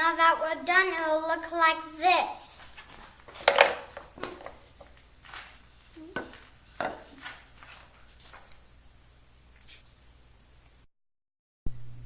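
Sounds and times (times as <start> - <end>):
objects knocking and clicking: 3.2 - 5.0
faint low hum: 11.7 - 12.0.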